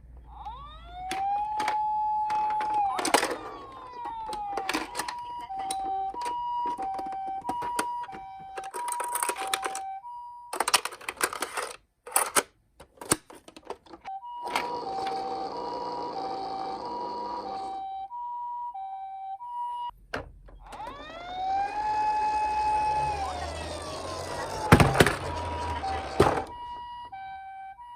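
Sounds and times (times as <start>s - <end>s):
toy electronic two-tone siren: 0.2s - 10.6s, 14.1s - 19.9s, 20.6s - 27.9s
plastic toy clicks and rattles: 1.0s - 8.0s, 8.6s - 9.8s, 10.6s - 15.3s.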